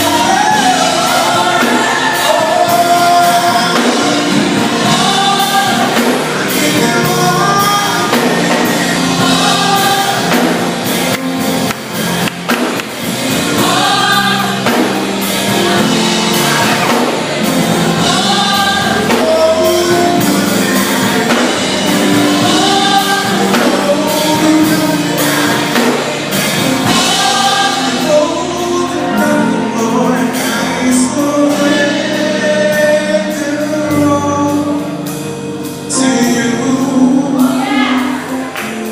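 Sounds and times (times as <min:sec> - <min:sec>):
percussion hits: 0:00.0 - 0:28.6
bass and keyboard tones: 0:00.0 - 0:38.9
group of singers: 0:00.0 - 0:38.9.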